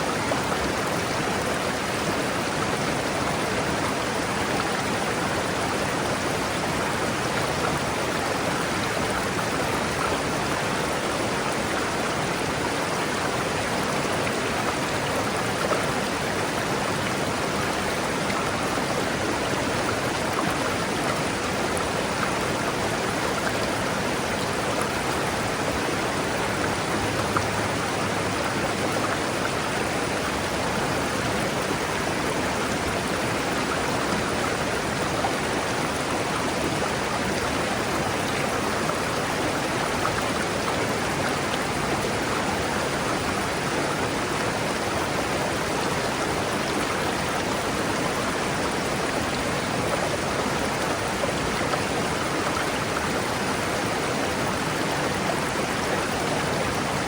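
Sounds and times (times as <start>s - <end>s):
river rushing over rocks: 0.0s - 57.0s.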